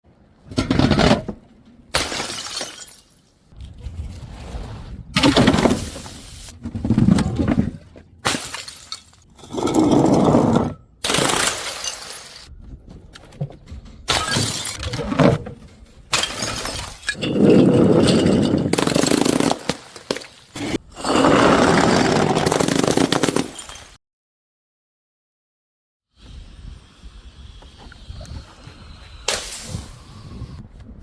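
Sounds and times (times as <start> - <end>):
glass bottles shattering: 2.0 - 3.2, 8.2 - 9.8, 11.1 - 12.5, 14.1 - 14.9, 16.1 - 20.6, 22.4 - 24.0
glass shards rattling: 8.4 - 9.6, 11.1 - 12.5, 14.1 - 14.9, 15.7 - 20.4.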